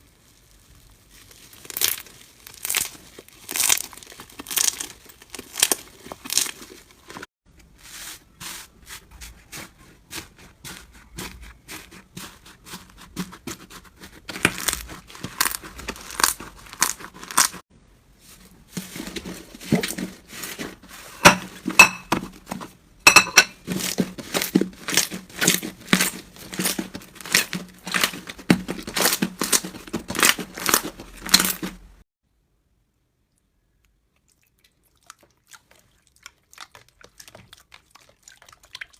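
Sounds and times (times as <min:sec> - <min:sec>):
slime crackling and popping: 0:00.0 - 0:07.2, 0:14.4 - 0:17.6, 0:23.7 - 0:31.7.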